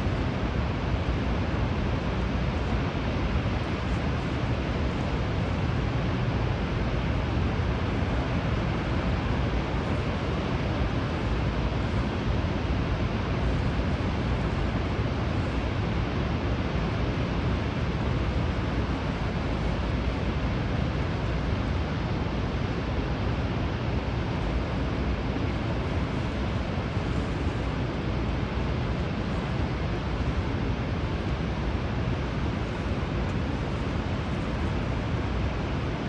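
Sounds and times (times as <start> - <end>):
waterfall roaring: 13.4 - 36.0.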